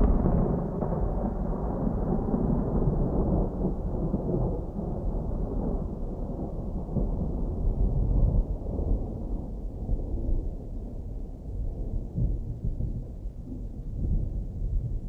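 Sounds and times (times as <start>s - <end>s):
distant thunder rumbling: 0.0s - 9.9s.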